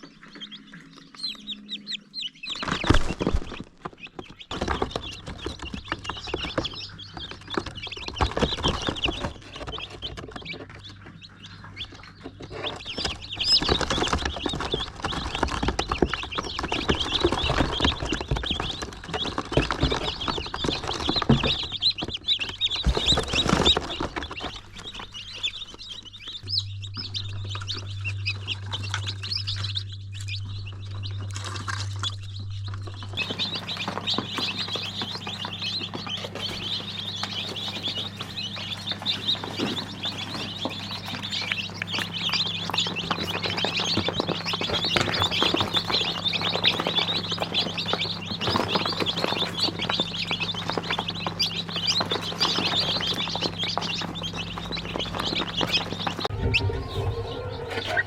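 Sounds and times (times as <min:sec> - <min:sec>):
chickens clucking and chirping: 0:00.0 - 0:58.0
steady low hum: 0:24.2 - 0:58.0.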